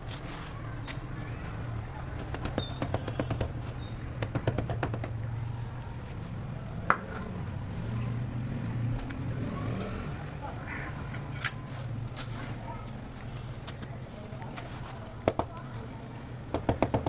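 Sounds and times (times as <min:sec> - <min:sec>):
sharp taps on blocks: 0:02.1 - 0:03.6, 0:15.2 - 0:15.7, 0:16.5 - 0:17.0.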